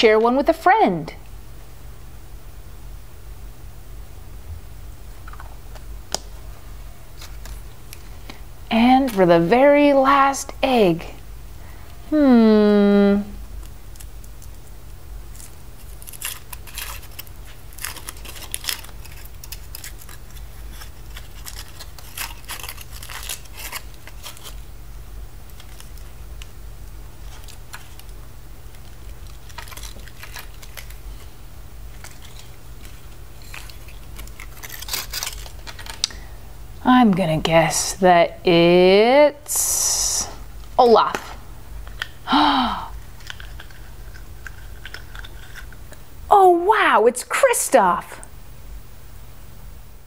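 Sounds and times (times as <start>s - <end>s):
steady low hum: 0.0s - 50.0s
wrapper tearing and crinkling: 15.3s - 24.7s, 25.5s - 26.5s, 27.2s - 31.3s, 31.9s - 36.2s, 42.9s - 45.9s.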